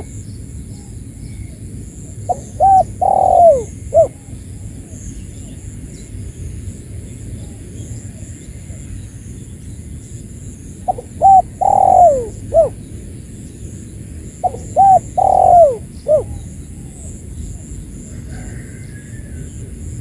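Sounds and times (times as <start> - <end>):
low background rumble: 0.0 - 20.0
dove cooing: 2.1 - 4.2, 10.9 - 12.8, 14.4 - 17.1.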